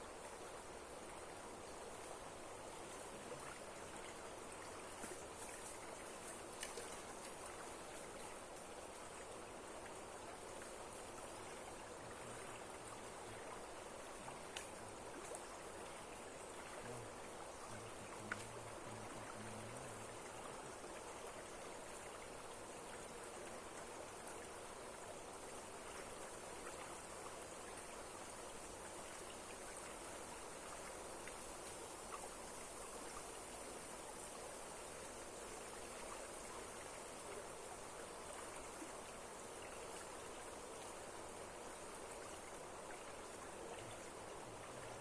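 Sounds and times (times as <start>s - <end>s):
rushing flowing water: 0.0s - 45.0s
faint clicks: 18.3s - 18.5s.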